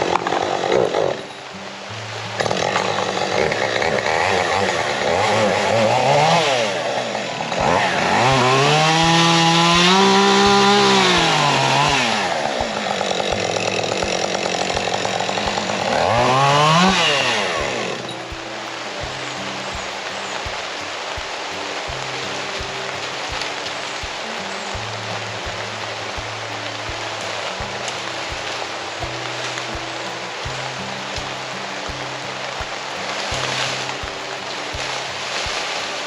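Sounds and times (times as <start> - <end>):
chainsaw cutting and revving: 2.4 - 18.0.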